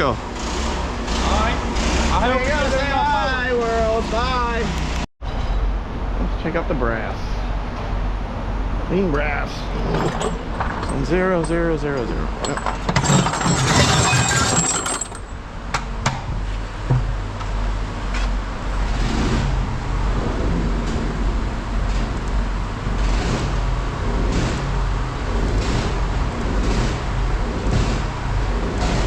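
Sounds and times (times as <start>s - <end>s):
vehicle engine humming: 15.2s - 29.0s.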